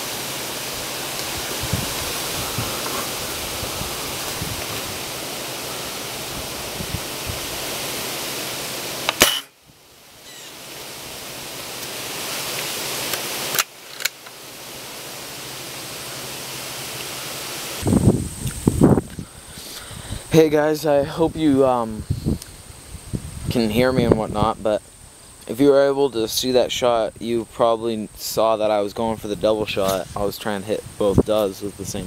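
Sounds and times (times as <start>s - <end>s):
steady hiss: 0.0s - 32.0s
air rifle shot: 9.0s - 9.6s.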